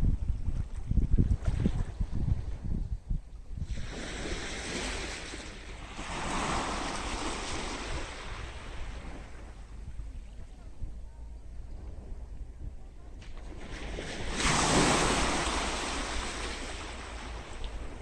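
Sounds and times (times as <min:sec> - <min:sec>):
wind rumble on microphone: 0:00.0 - 0:18.0
sea wave washing up beach: 0:13.4 - 0:18.0.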